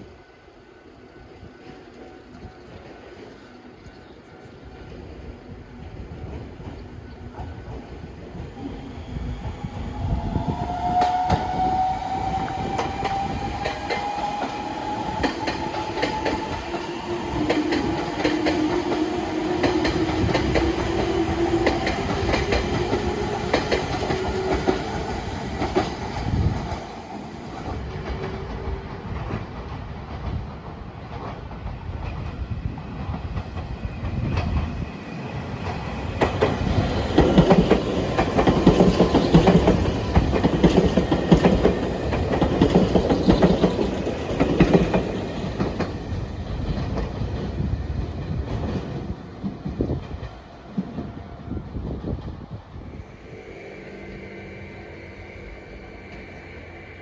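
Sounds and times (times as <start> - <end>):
electric train passing: 0.0 - 57.0
wheels clicking over rail joints: 35.6 - 50.9
tone drifting in pitch: 53.1 - 57.0.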